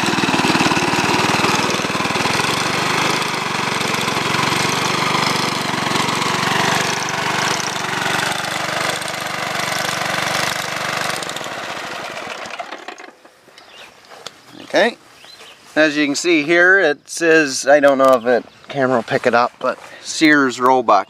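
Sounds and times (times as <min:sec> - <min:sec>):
lawn mower engine running: 0:00.0 - 0:13.8.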